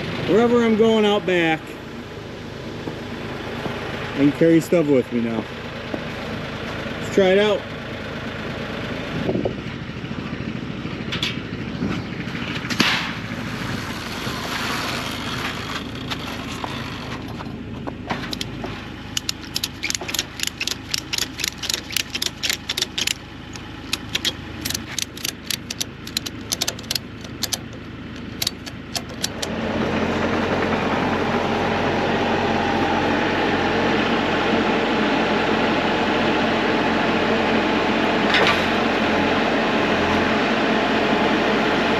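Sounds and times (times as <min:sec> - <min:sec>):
diesel engine running: 0:00.0 - 0:41.9
sharp regular clicks: 0:18.2 - 0:29.5.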